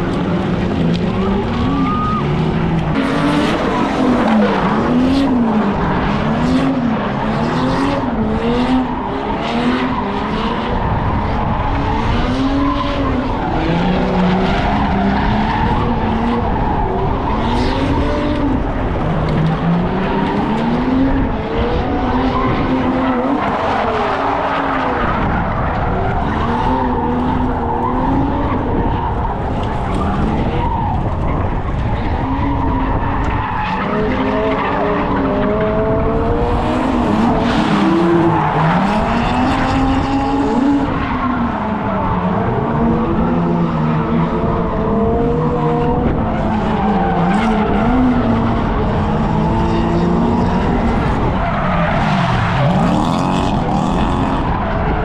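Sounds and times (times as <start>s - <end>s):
car engine revving: 0.0s - 55.0s.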